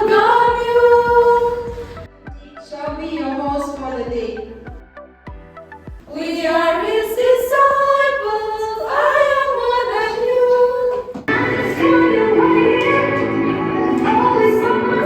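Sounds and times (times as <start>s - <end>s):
voices singing together: 0.0s - 3.4s, 6.1s - 15.0s
musical accompaniment: 11.3s - 15.0s.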